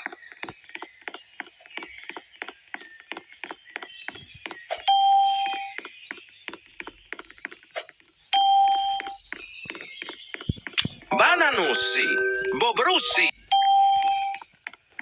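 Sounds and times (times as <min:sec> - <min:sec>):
fast uneven clicking: 0:00.0 - 0:11.1, 0:14.0 - 0:15.0
bell-like dings: 0:11.1 - 0:14.4.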